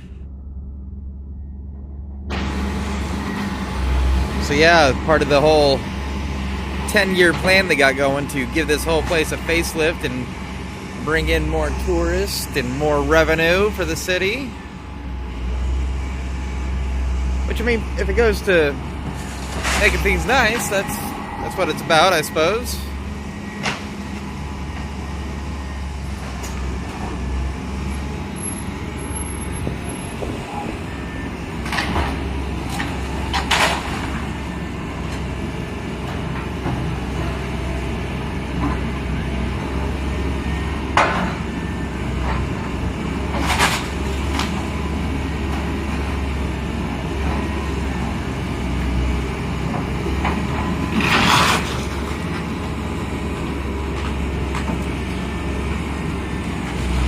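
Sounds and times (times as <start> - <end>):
diesel engine running: 0.0 - 57.0
building crunching and banging: 17.6 - 25.0, 31.6 - 34.4, 43.2 - 44.8, 49.7 - 52.8.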